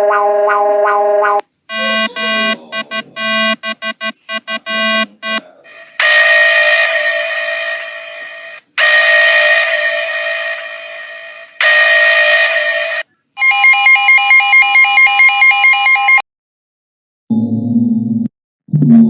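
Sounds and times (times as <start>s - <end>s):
long horn-like alert tones: 0.0s - 13.0s
short buzzy alert beeps: 1.2s - 6.4s.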